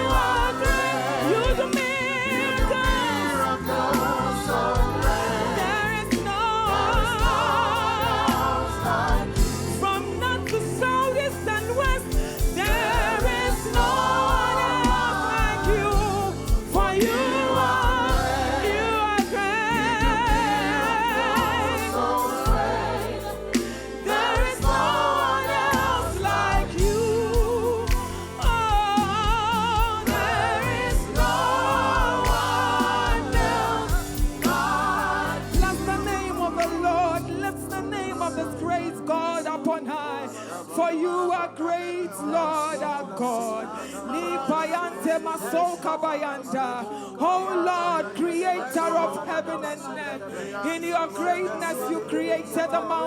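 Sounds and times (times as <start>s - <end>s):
band with steady drum beat: 0.0s - 36.8s
choir singing: 0.0s - 53.0s
gospel singers with vibrato: 0.0s - 53.0s.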